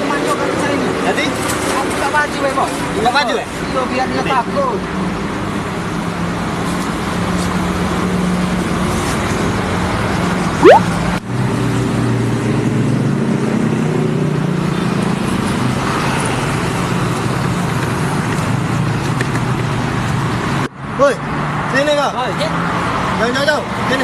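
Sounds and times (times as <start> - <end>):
road traffic: 0.0 - 24.0
fast-rising whistle-like glide: 10.6 - 10.8.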